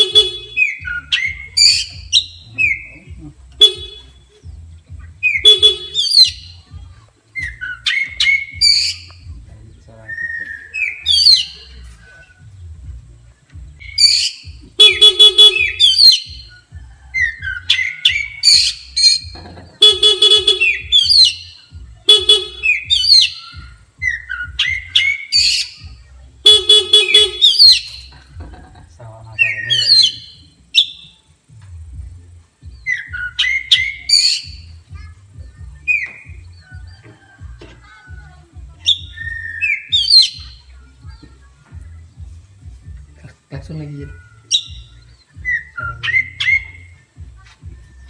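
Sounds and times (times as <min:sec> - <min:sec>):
buzzy horn honks: 0:00.0 - 0:06.6, 0:13.8 - 0:16.4, 0:18.1 - 0:24.8, 0:26.4 - 0:28.4
bird singing whistled phrases: 0:00.0 - 0:12.7, 0:13.6 - 0:28.4, 0:29.3 - 0:31.2, 0:32.6 - 0:37.4, 0:38.8 - 0:41.2, 0:43.6 - 0:47.3.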